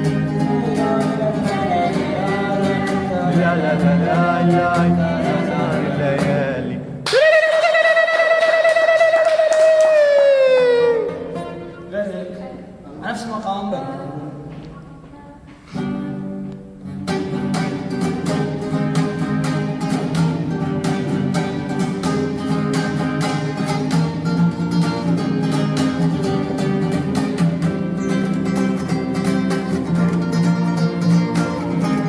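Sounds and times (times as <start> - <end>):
plucked string instrument: 0.0 - 7.0, 11.0 - 12.4, 15.7 - 32.0.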